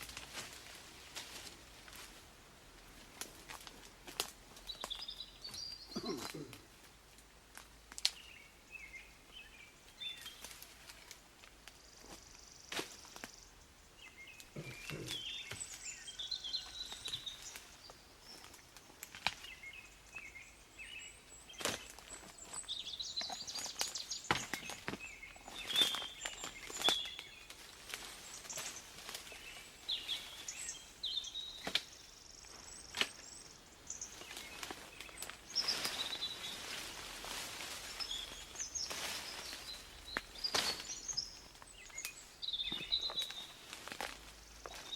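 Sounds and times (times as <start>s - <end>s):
songbirds calling and trilling: 3.1s - 7.0s, 7.6s - 44.9s.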